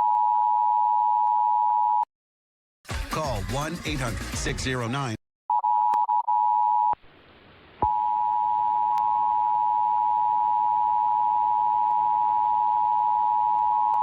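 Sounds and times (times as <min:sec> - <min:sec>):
two-tone alarm: 0:07.9 - 0:14.0.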